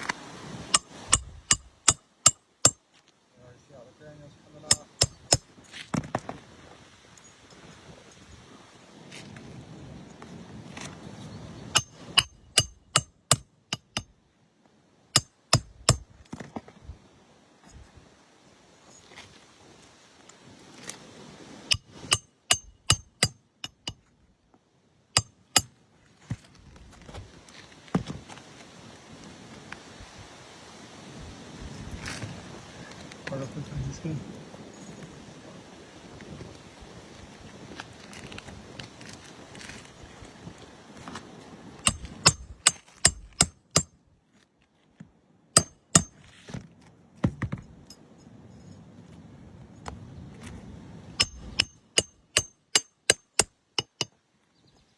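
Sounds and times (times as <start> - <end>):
hammer striking nails: 4.7 - 5.4, 11.7 - 14.1, 15.2 - 16.1, 21.7 - 24.0, 41.9 - 43.9, 45.6 - 46.2, 51.2 - 54.2.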